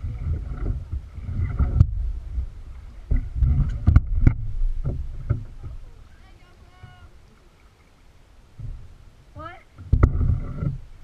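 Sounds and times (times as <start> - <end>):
wind buffeting microphone: 0.0 - 7.3.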